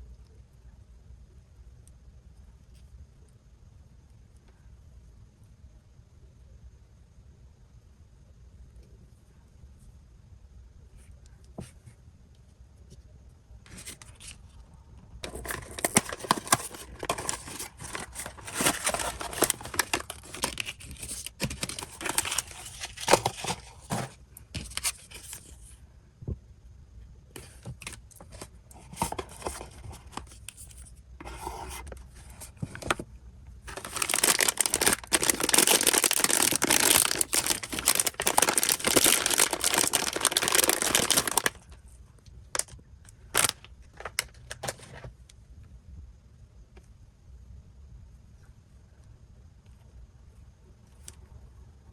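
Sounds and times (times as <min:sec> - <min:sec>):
packaging tearing and crinkling: 0:15.2 - 0:25.5, 0:33.7 - 0:41.6, 0:43.3 - 0:44.8.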